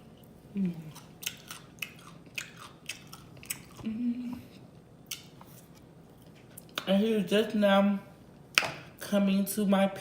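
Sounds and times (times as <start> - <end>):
hummed voice sound: 0.5 - 1.0, 3.8 - 4.5
chewing food crunches: 0.9 - 3.9.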